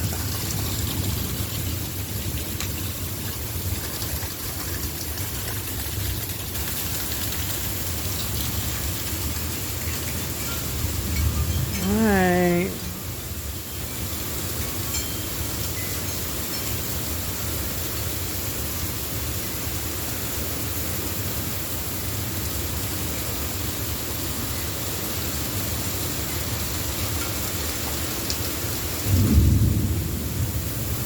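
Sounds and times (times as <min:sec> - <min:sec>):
heavy rain pouring: 0:00.0 - 0:31.0.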